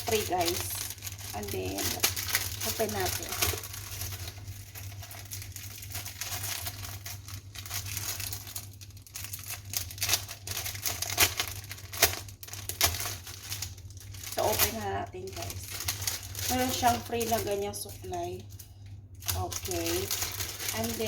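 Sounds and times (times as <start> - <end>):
packaging crinkling and rustling: 0.0 - 21.0.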